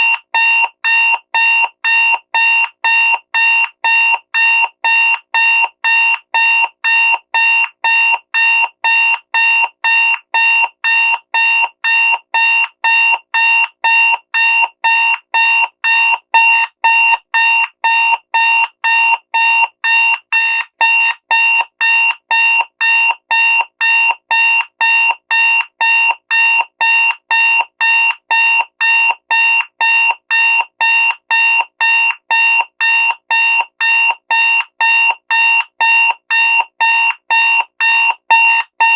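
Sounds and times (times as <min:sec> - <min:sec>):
digital alarm clock beeping: 0:00.0 - 0:38.9.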